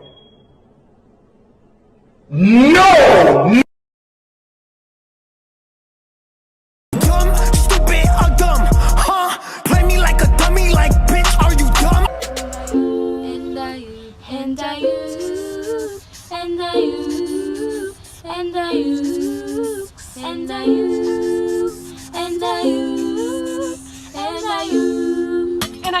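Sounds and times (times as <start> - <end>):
person singing melodic phrases: 7.0 - 26.0.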